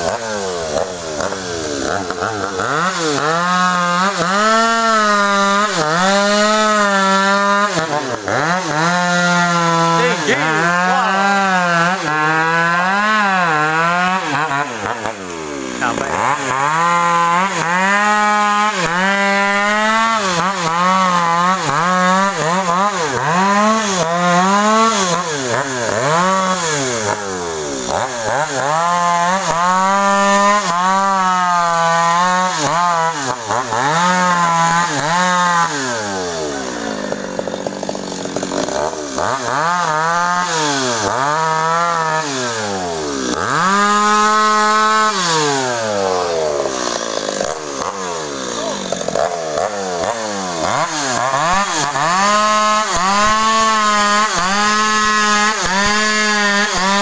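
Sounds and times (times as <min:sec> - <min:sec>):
chainsaw cutting wood: 0:00.0 - 0:57.0.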